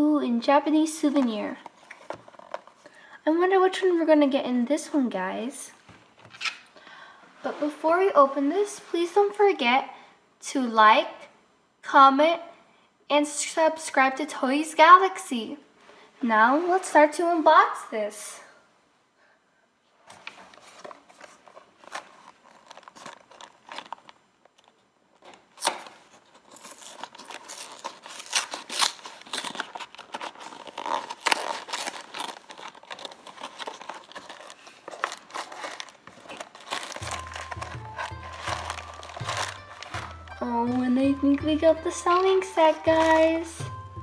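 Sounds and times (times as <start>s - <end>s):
packaging tearing and crinkling: 20.2s - 40.4s
music with steady bass beat: 43.6s - 44.0s.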